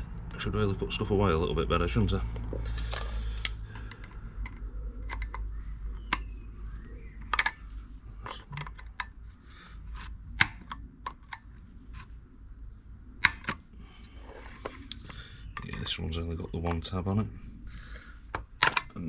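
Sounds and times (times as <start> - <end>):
hand tools clicking on steel parts: 2.7 - 3.6.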